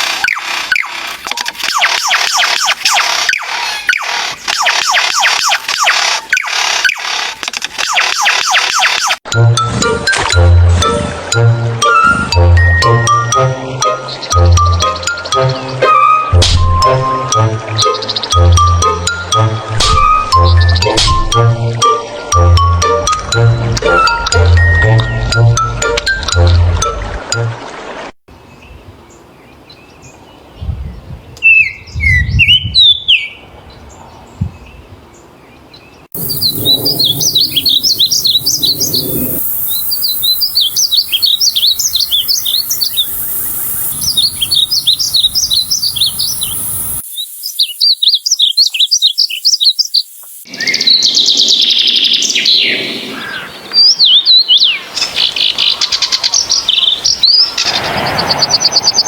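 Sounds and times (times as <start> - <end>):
birds chirping and calling: 1.6 - 7.1, 17.8 - 18.4, 28.6 - 59.0.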